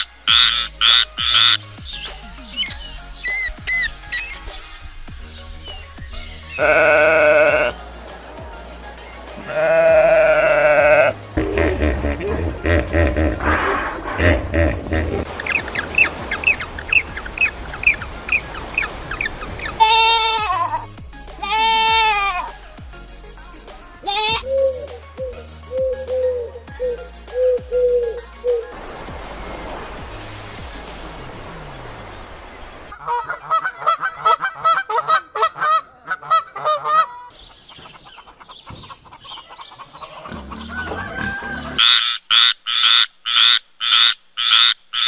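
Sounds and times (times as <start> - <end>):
goose honking: 0.0 - 1.6, 6.6 - 7.8, 32.9 - 37.3
bird high-pitched calls: 0.0 - 4.8, 15.3 - 20.7
falling bleat: 6.6 - 7.8, 9.4 - 11.7, 19.8 - 20.8, 21.4 - 22.5, 24.0 - 24.4
steady hiss: 24.7 - 32.9.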